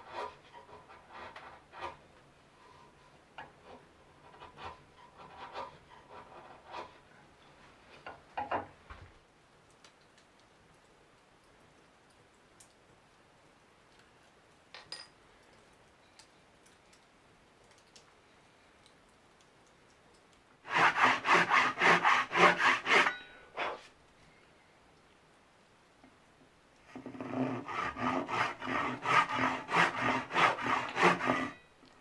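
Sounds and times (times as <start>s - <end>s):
hand tool scraping wood: 20.7s - 23.9s, 26.9s - 31.6s.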